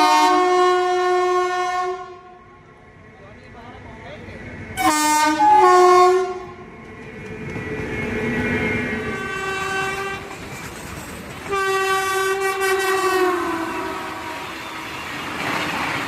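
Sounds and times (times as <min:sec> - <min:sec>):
locomotive horn blasts: 0:00.0 - 0:02.4, 0:04.8 - 0:06.6, 0:09.0 - 0:10.3, 0:11.5 - 0:15.1.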